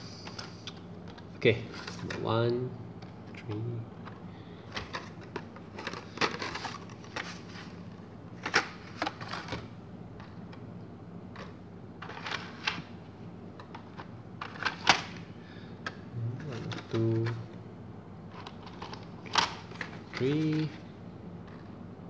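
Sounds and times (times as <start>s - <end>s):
faint steady hum: 0.0s - 22.0s
plastic packaging clicks and rustles: 4.0s - 7.7s, 8.4s - 10.6s, 13.6s - 15.2s, 18.3s - 20.7s.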